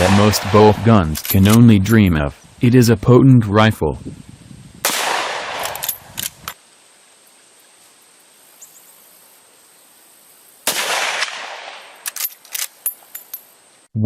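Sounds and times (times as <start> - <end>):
rifle shots with echo: 0.0 - 1.0, 4.8 - 6.1, 10.6 - 12.0
sharp clicks: 1.1 - 1.8, 5.5 - 6.6, 12.0 - 13.4.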